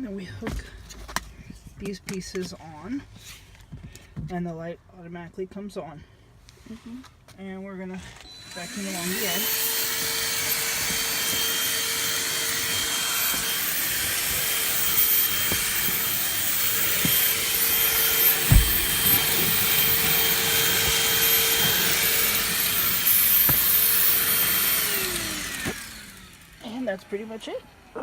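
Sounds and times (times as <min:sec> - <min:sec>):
handheld vacuum motor whine: 0:08.0 - 0:28.0
vacuum motor winding down: 0:08.2 - 0:28.0
knocks: 0:18.3 - 0:21.8.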